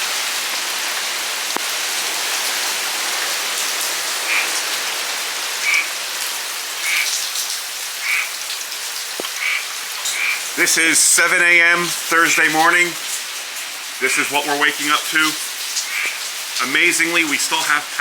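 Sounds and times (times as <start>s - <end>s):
heavy rain hissing: 0.0s - 18.0s
frogs croaking: 4.0s - 10.6s, 14.8s - 18.0s.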